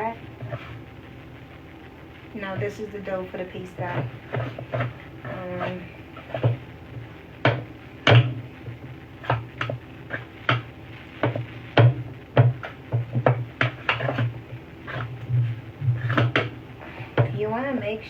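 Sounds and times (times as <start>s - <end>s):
dishes and utensils knocking: 7.4s - 8.4s, 9.2s - 15.1s, 15.9s - 16.6s.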